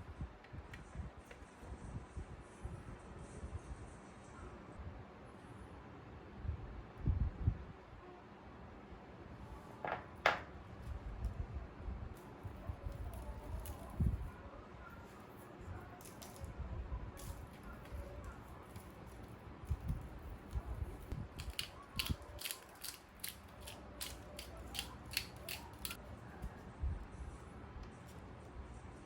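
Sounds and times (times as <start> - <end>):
objects knocking: 9.8 - 10.5
scissors snipping: 18.7 - 26.6.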